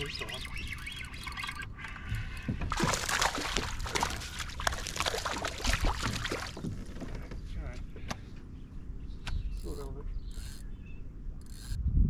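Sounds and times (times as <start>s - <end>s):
fish splashing in water: 0.0s - 7.2s.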